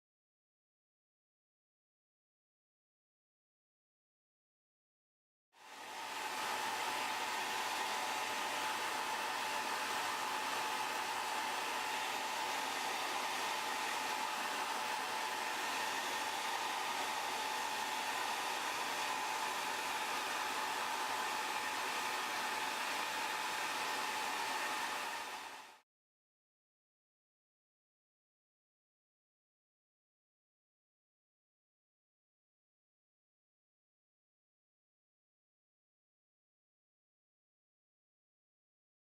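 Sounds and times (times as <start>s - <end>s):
hot-air blower hissing: 5.6s - 25.8s.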